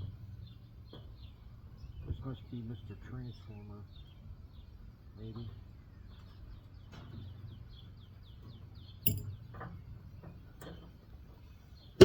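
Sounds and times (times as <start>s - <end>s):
light taps of parts: 8.4s - 11.0s
metallic clink of tools: 9.0s - 9.4s.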